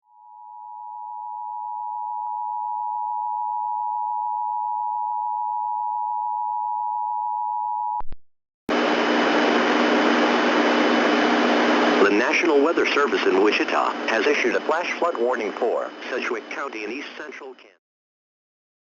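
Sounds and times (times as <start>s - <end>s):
static hiss: 8.7s - 17.6s.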